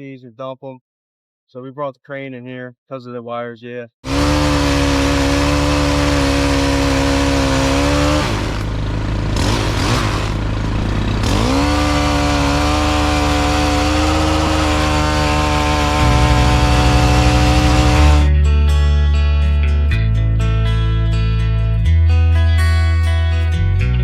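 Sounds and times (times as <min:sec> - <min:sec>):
engine labouring under load: 0:04.1 - 0:18.3
deep engine rumble: 0:04.1 - 0:21.2.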